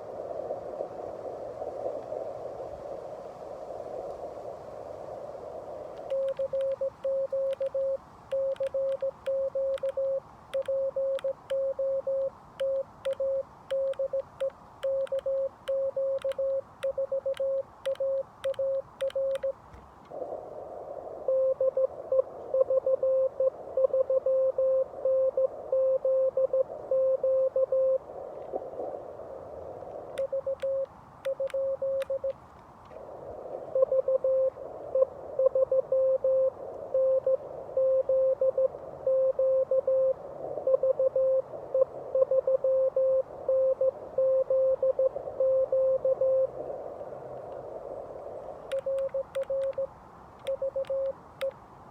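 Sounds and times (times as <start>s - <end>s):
radio receiver hiss: 0.0s - 51.9s
morse code beeps: 6.0s - 19.6s, 21.3s - 28.0s, 30.2s - 32.4s, 33.8s - 46.5s, 48.7s - 51.6s.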